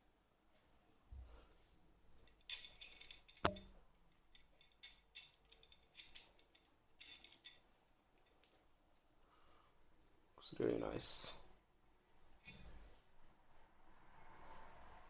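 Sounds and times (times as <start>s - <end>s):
metal parts scraping and rattling: 2.2s - 8.6s.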